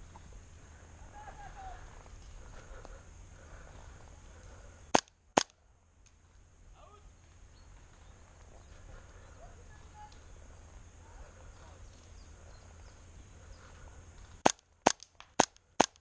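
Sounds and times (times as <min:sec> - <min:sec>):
airsoft gun shots: 0:14.4 - 0:16.0.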